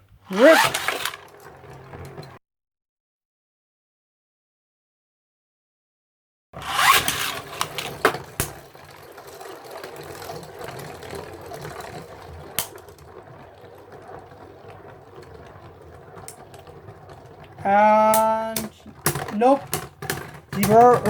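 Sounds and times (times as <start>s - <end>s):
spinning tops whirring: 0.3s - 2.4s, 6.6s - 21.0s
spinning tops clashing: 6.6s - 21.0s.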